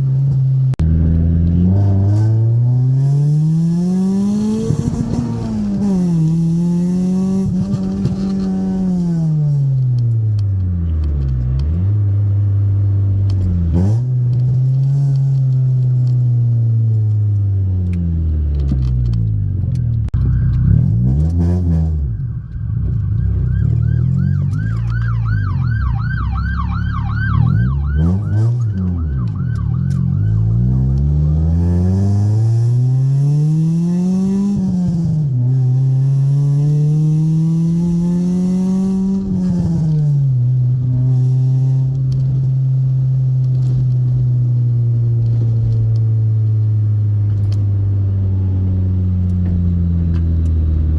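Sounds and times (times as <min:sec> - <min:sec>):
car engine revving and shifting: 0:00.0 - 0:50.9
siren wailing: 0:20.2 - 0:31.6.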